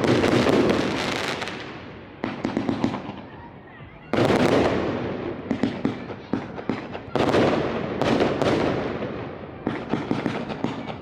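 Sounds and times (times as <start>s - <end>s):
fireworks bursting: 0.0s - 3.4s, 4.1s - 11.0s
fireworks crackling and popping: 0.0s - 3.4s, 4.1s - 11.0s.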